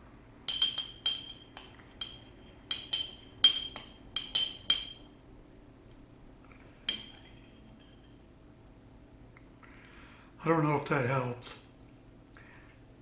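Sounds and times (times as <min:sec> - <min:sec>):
glass tapped with clinks: 0:00.5 - 0:05.1, 0:06.9 - 0:08.2.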